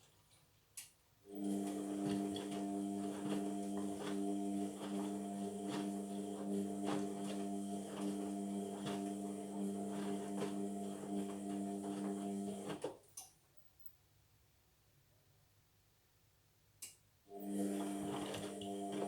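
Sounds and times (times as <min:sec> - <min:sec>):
washing machine hum: 0:01.3 - 0:13.0, 0:17.3 - 0:19.0.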